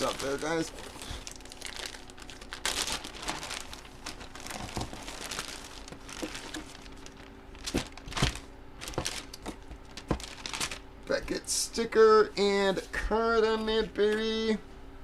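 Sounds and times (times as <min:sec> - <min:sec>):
plastic packaging crinkling: 0:00.0 - 0:10.9.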